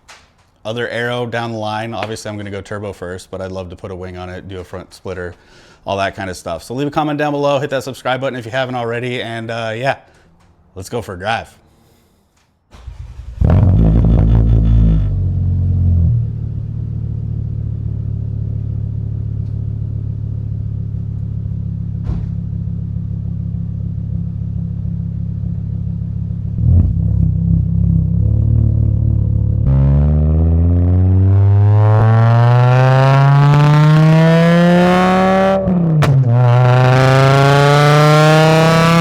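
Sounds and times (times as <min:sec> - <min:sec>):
car engine idling and revving: 0:12.8 - 0:39.0.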